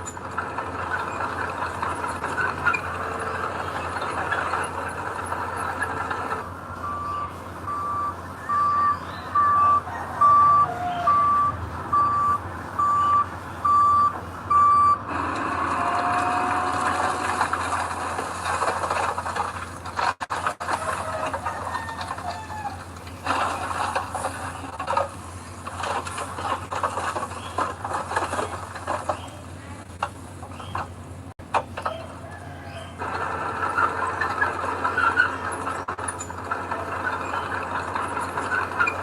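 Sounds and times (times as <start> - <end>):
machinery clattering: 0.0 - 9.8, 13.9 - 39.0
heavy machinery engine hum: 0.0 - 39.0
reversing alarm beeping: 6.8 - 15.1.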